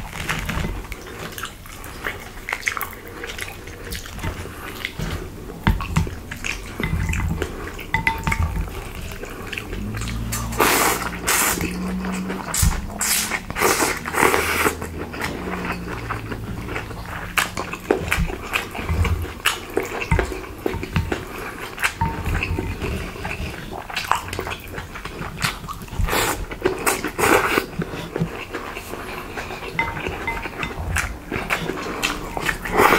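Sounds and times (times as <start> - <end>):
chewing clicks and smacks: 0.1 - 5.1, 23.2 - 32.9
low hum: 6.0 - 19.4.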